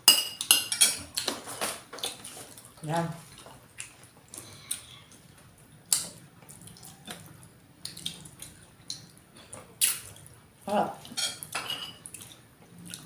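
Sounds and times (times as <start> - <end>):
wet eating sounds: 1.0 - 13.0.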